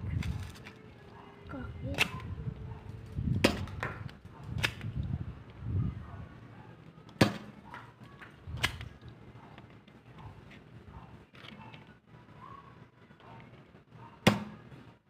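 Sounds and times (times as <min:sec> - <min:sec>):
toy pistol plastic snaps and clicks: 0:03.6 - 0:05.1, 0:08.6 - 0:09.1.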